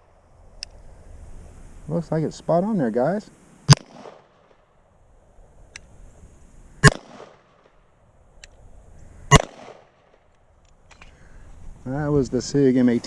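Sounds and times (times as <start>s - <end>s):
pistol shots with echo: 3.7s - 4.3s, 6.8s - 7.7s, 9.3s - 10.2s.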